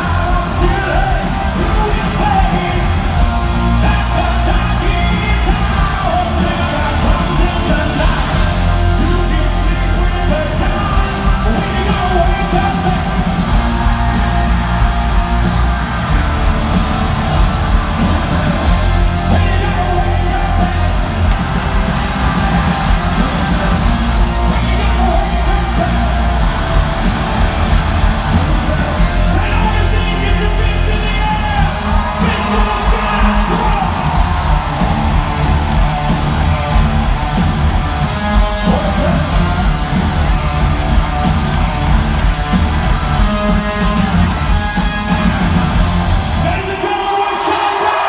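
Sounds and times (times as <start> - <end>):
live rock band: 0.0 - 48.0
person singing: 17.8 - 26.5.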